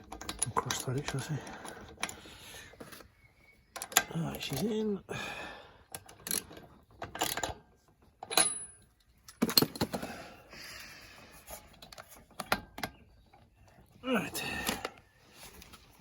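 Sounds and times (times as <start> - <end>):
metal tools clinking: 8.2 - 10.0.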